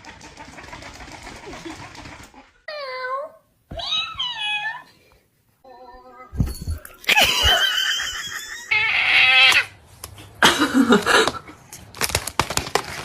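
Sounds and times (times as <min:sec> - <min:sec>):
cat meowing: 0:02.7 - 0:04.9, 0:08.7 - 0:09.7.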